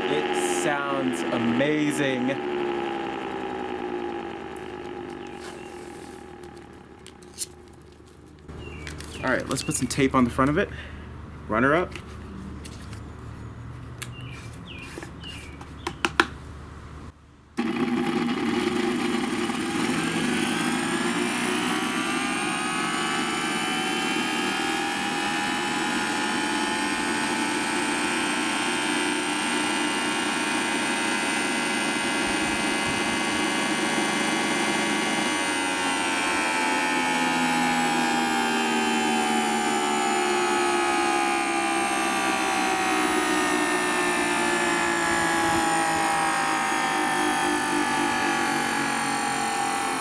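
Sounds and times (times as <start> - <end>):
siren wailing: 0.0 - 7.2, 18.1 - 50.0.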